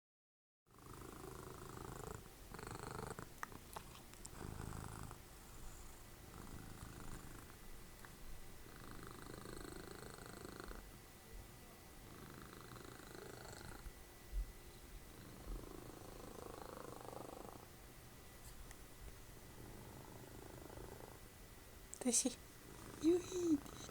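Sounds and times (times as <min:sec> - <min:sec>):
cat purring: 0:00.7 - 0:10.9, 0:12.0 - 0:23.9.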